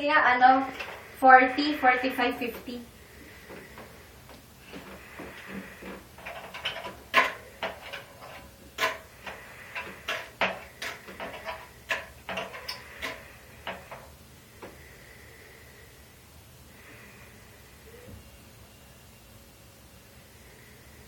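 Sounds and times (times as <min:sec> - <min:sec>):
sharp clicks and light knocks: 0:03.5 - 0:14.8
faint high-pitched tone: 0:17.8 - 0:19.6.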